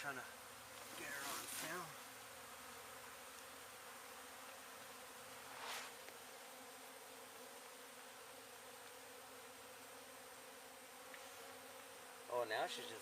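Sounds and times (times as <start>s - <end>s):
bees buzzing: 0.0s - 13.0s
brief scuff: 5.6s - 6.0s.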